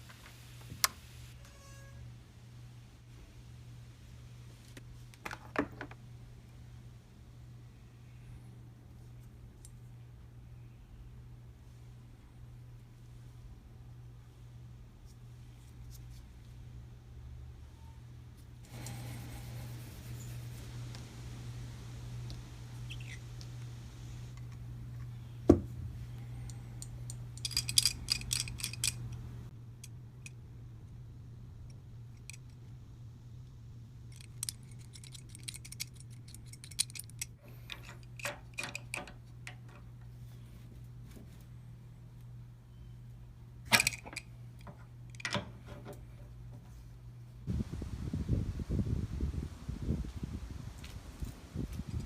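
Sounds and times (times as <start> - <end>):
low hum: 16.9 - 43.6
metal wrench parts clicking: 26.8 - 29.2, 32.1 - 32.6, 34.1 - 39.8, 43.7 - 45.4.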